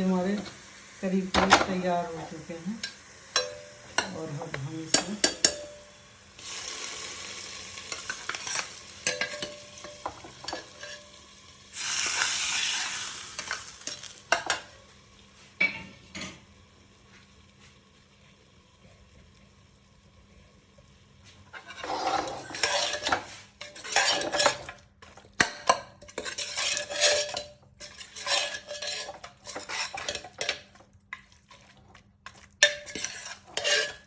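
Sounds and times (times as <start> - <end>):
spoon clinking against pot rim: 2.8 - 4.2, 4.9 - 5.8, 22.6 - 30.8, 32.3 - 34.0
metal spoon scraping a pot: 7.9 - 11.2, 21.5 - 34.0.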